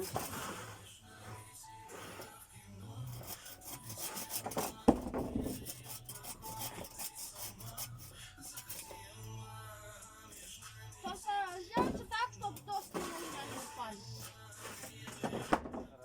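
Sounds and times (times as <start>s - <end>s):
wooden boards scraping and knocking: 4.0s - 5.8s, 11.8s - 13.8s, 14.6s - 16.0s.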